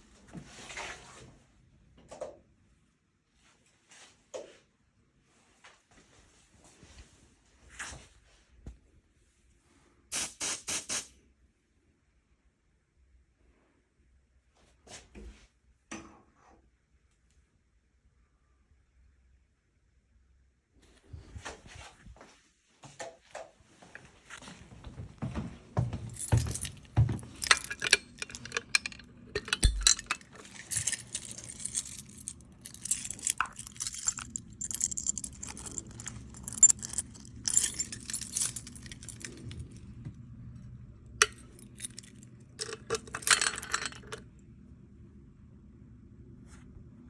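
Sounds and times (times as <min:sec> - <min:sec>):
keys jangling: 0:25.9 - 0:39.8, 0:41.2 - 0:44.2.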